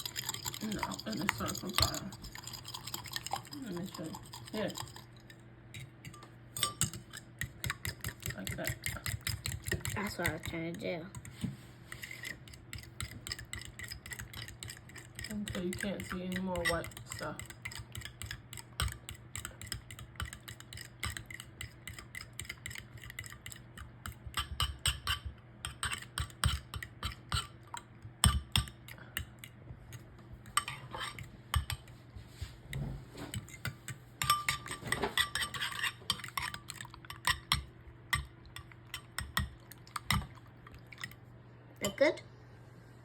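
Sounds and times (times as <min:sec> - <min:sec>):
whisk clinking against bowl: 0:00.0 - 0:05.3, 0:06.0 - 0:29.3, 0:30.4 - 0:31.9, 0:33.3 - 0:40.3.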